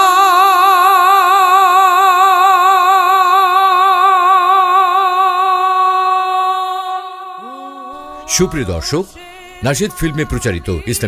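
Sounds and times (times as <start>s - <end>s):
person singing a long note: 0.0s - 11.0s.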